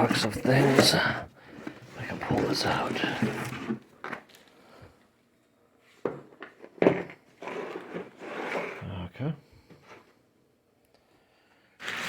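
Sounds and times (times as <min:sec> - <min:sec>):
scraping and rustling of packing: 0:00.0 - 0:04.6, 0:05.8 - 0:08.9.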